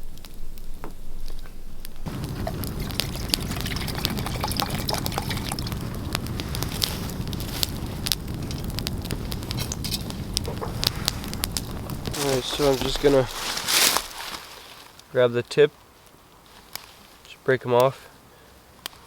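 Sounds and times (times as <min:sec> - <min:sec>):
campfire crackling and popping: 0:01.8 - 0:15.2
low rush of fire: 0:02.0 - 0:15.2.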